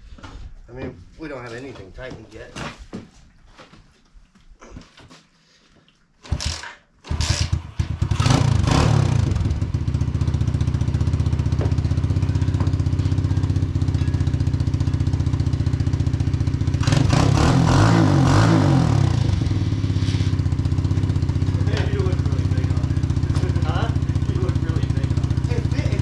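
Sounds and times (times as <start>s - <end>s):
dirt bike engine revving and idling: 6.3s - 26.0s.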